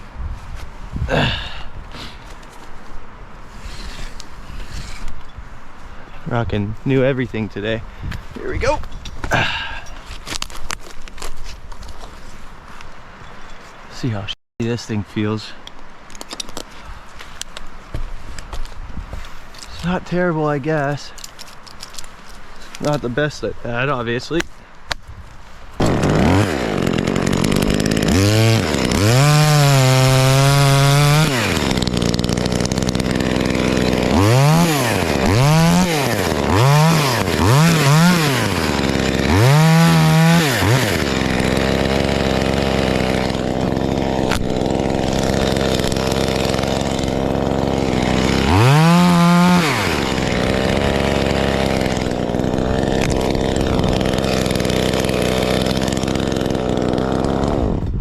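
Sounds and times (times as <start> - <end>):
chainsaw idling and revving: 25.8 - 58.0.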